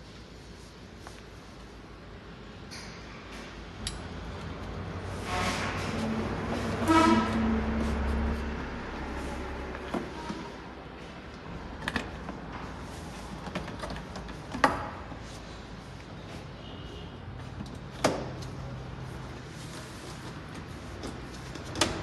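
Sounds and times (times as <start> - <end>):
plastic parts clicking and knocking: 11.7 - 15.0.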